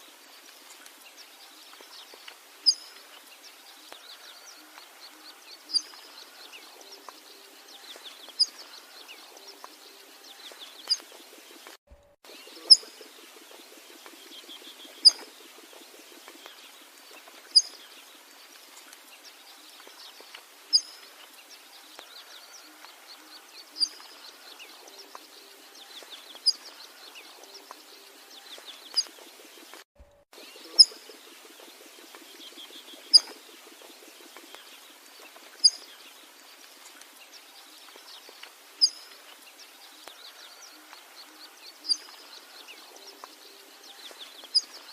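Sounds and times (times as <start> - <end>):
sharp bird chirp: 12.3 - 17.8, 30.4 - 33.4
faint bird trilling: 12.4 - 16.6.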